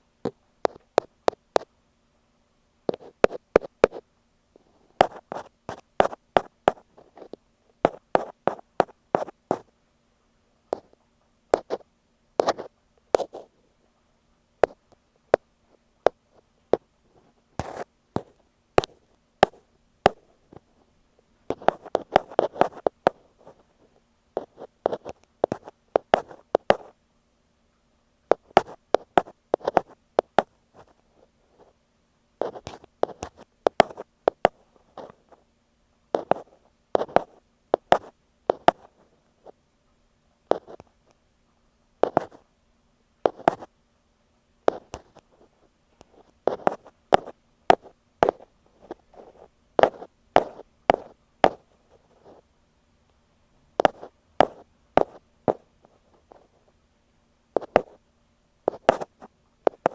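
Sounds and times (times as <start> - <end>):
faint steady hum: 0.0 - 59.9
ear pick scratching microphone: 17.2 - 20.6, 21.5 - 23.7, 36.2 - 39.0, 42.0 - 42.4, 43.3 - 43.7, 44.7 - 52.4, 53.8 - 56.6, 57.6 - 58.0, 58.7 - 59.9.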